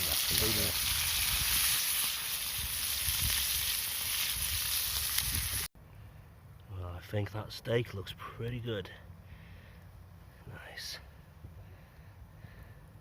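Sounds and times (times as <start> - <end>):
steak sizzling: 0.0 - 5.7.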